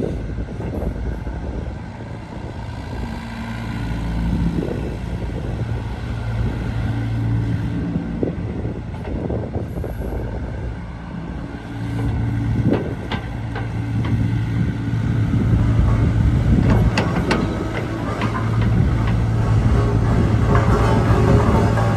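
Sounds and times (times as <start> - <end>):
excavator diesel engine running: 0.3 - 21.9
metallic clanks: 12.6 - 21.9.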